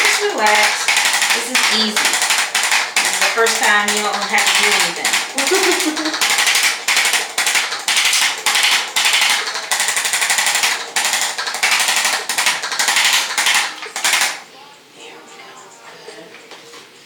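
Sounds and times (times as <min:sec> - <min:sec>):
percussion massage tool buzzing: 0:00.0 - 0:14.4.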